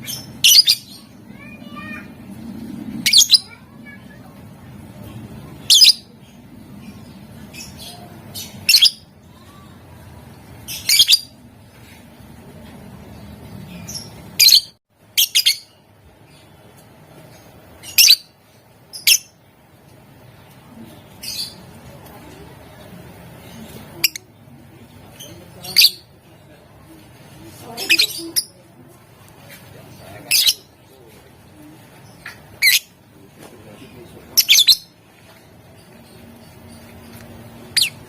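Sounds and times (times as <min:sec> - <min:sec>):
low background hum: 0:00.0 - 0:38.0
bird chirping shrilly: 0:03.0 - 0:03.6.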